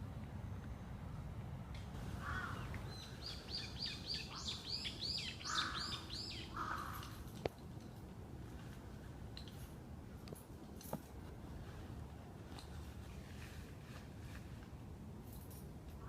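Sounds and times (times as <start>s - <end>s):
bird chirping: 2.6s - 6.6s.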